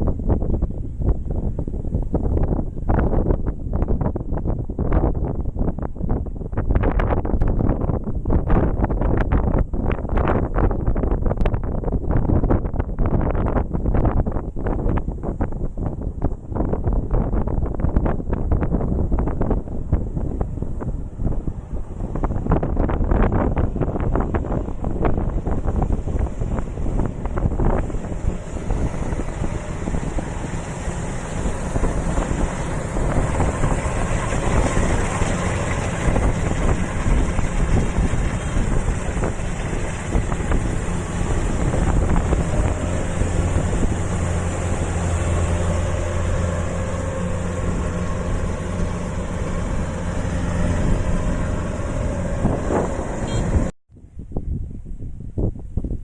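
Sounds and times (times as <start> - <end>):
wind buffeting microphone: 0.0 - 56.0
combine harvester running: 19.3 - 53.7.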